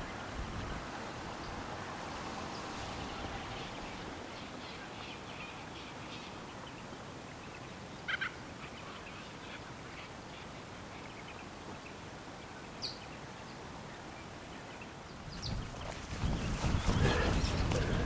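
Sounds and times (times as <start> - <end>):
steady low rush: 15.7 - 18.0.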